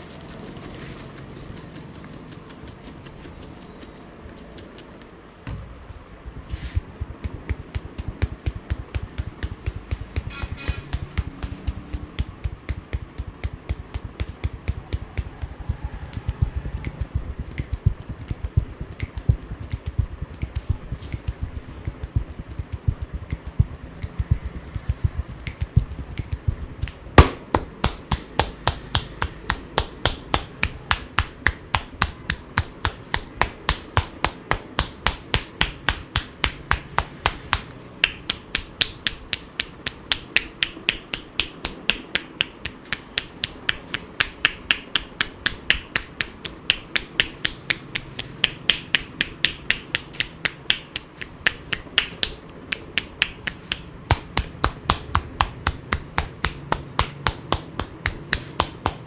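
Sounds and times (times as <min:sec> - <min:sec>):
hands slapping body in massage: 0:06.1 - 0:59.0.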